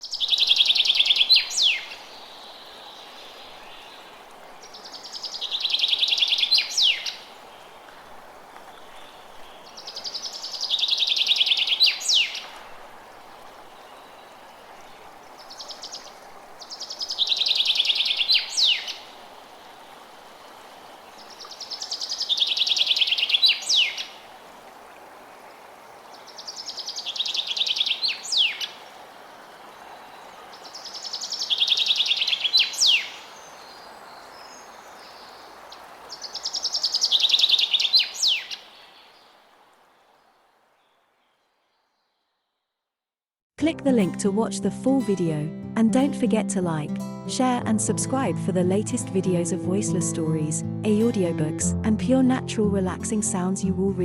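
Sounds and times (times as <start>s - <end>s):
songbird trilling: 0.0s - 2.0s, 4.9s - 7.2s, 9.8s - 12.5s, 16.7s - 19.0s, 21.5s - 24.2s, 26.8s - 28.8s, 30.8s - 33.3s, 36.2s - 38.8s
gentle stream rushing: 0.0s - 41.7s.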